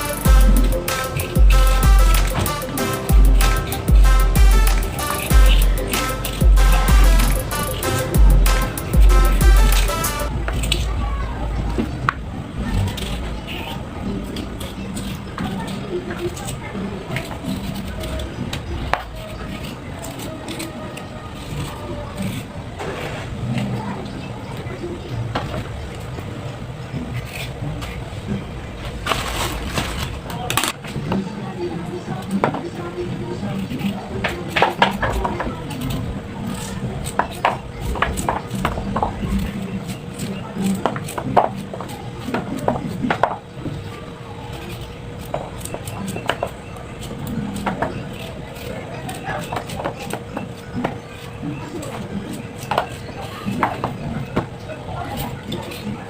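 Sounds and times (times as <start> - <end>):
background music: 0.0 - 10.4.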